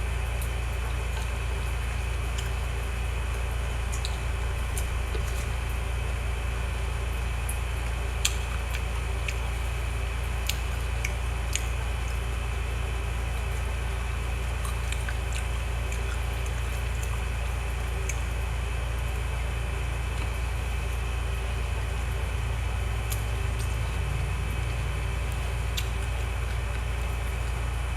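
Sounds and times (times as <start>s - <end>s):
steady low hum: 0.0s - 27.9s
wet chewing mouth sounds: 7.8s - 18.4s, 22.7s - 27.9s.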